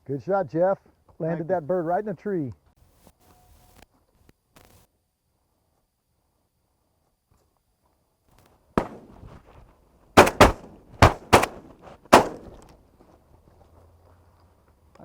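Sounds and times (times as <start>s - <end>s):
shotgun blasts: 8.8s - 9.4s, 10.2s - 12.7s.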